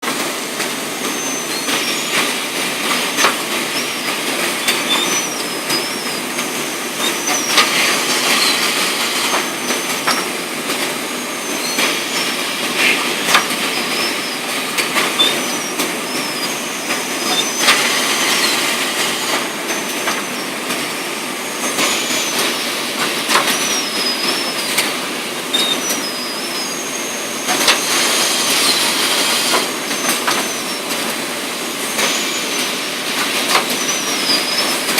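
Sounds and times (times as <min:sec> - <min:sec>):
bagging machine din: 0:00.0 - 0:34.9
hissing bursts: 0:01.1 - 0:24.8
high squeaking tones: 0:03.8 - 0:10.4, 0:11.2 - 0:20.6.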